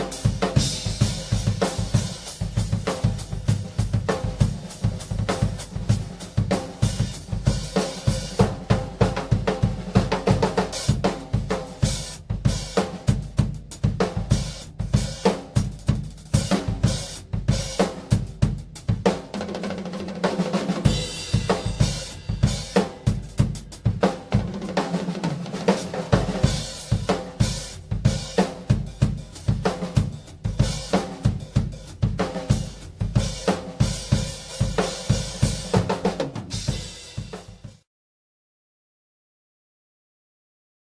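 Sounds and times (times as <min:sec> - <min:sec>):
bass drum: 0:00.0 - 0:19.4, 0:20.4 - 0:37.8
snare drum: 0:00.0 - 0:37.9
cymbals: 0:20.8 - 0:24.1.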